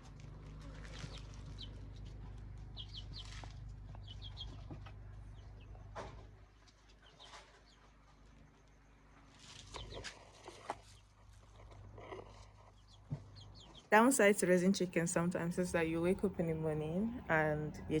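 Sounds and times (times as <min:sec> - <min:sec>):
low steady rumble: 0:00.0 - 0:06.6, 0:13.9 - 0:18.0.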